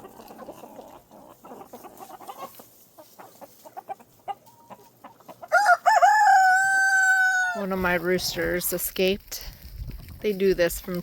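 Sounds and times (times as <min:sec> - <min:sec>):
chickens clucking: 0:00.0 - 0:08.7.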